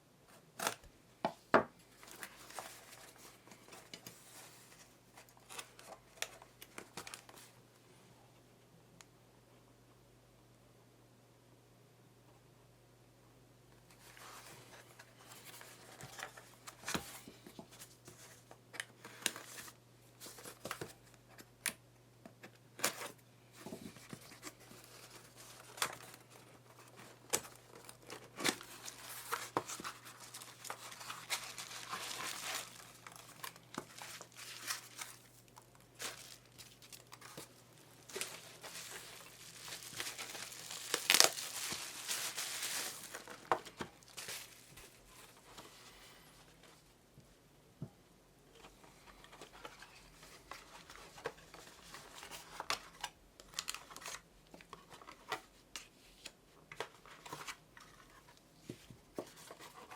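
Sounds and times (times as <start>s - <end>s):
wrapping crinkling and tearing: 24.3s - 45.0s.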